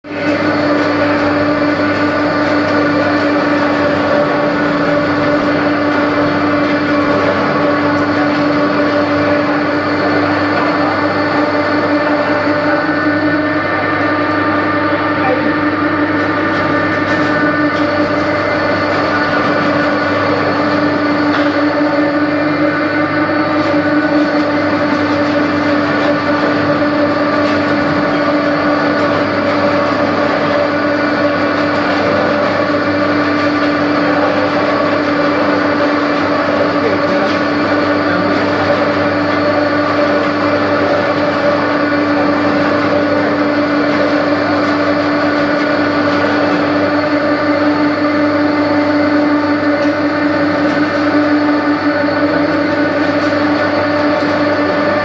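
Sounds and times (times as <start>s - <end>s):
machine motor humming: 0.1s - 55.0s.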